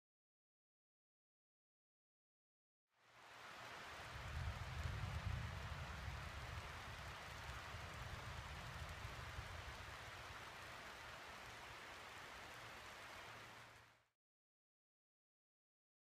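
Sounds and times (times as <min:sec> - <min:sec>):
light rain falling: 0:03.0 - 0:14.1.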